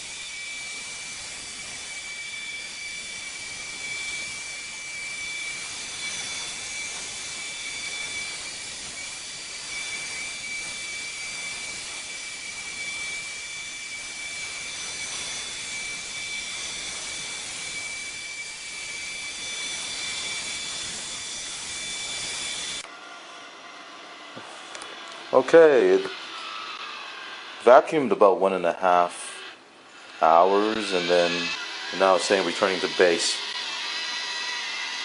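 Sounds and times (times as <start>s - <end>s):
robotic vacuum cleaner running: 0.0s - 27.9s, 28.9s - 35.0s.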